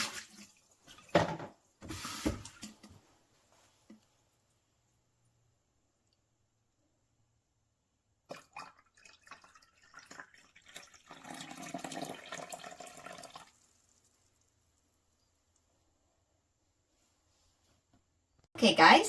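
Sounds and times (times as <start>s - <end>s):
coffee splashing and trickling: 0.0s - 1.2s, 8.3s - 14.7s.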